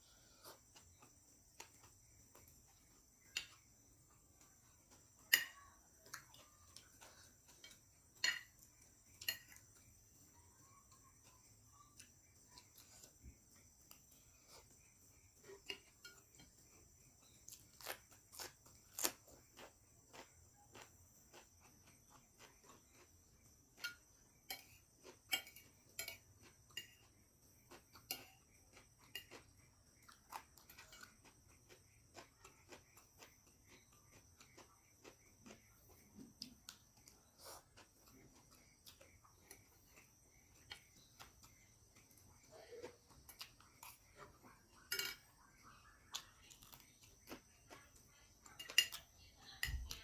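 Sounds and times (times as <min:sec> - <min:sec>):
chewing: 0:00.1 - 0:50.0
spoon scraping on a plate: 0:06.4 - 0:09.7, 0:23.8 - 0:27.1, 0:44.8 - 0:45.4.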